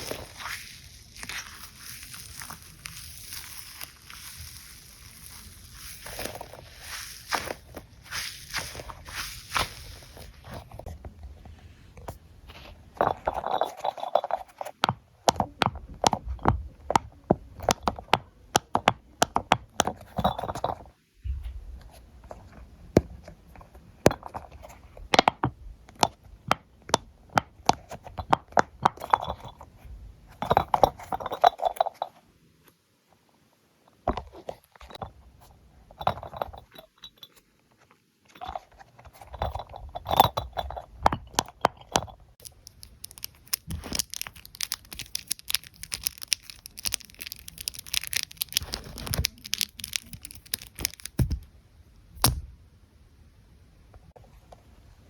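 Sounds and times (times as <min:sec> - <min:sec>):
fidget toys clicking and crunching: 0:00.0 - 0:10.9, 0:41.0 - 0:51.5.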